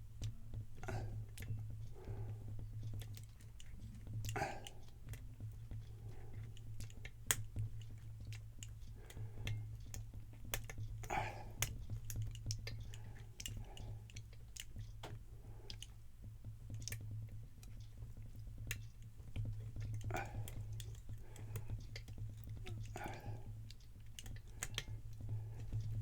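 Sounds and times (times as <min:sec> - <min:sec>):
steady low hum: 0:17.8 - 0:26.0.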